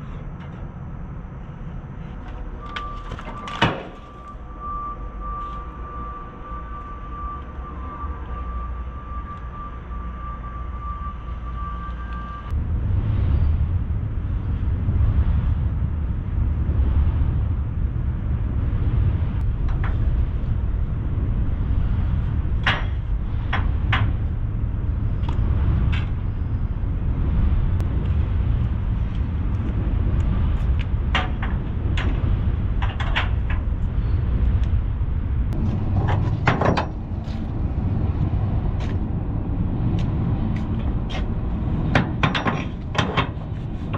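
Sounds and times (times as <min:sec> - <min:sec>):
heavy engine rumbling: 0:00.0 - 0:43.9
sharp knocks and clanks: 0:22.6 - 0:24.3, 0:30.7 - 0:33.7, 0:35.5 - 0:37.5, 0:40.6 - 0:43.9.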